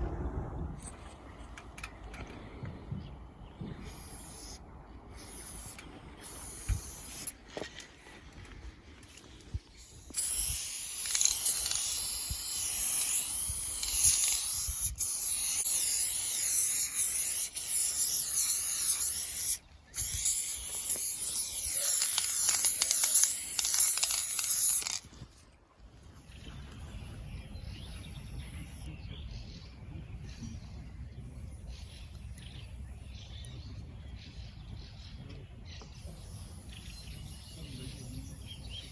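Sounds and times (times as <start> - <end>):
faint low rumble: 0.0 - 3.8.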